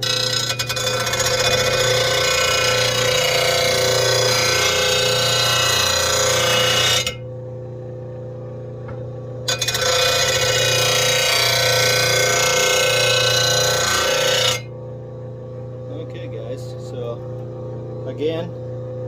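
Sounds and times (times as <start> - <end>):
blade grinding on wheel: 0.0 - 7.2, 9.5 - 14.7
machine humming: 0.0 - 19.0.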